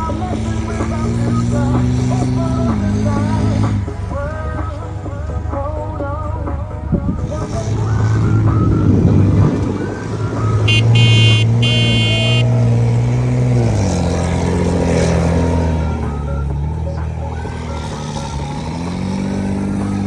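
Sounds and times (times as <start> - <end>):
high many-toned whistle: 10.7 - 12.5.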